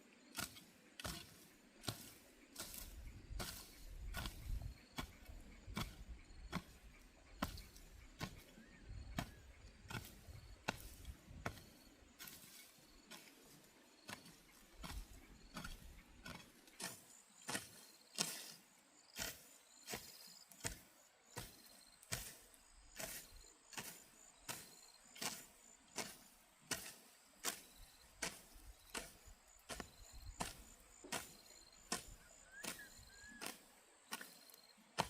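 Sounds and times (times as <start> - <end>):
hand tool strikes: 28.2 - 34.3.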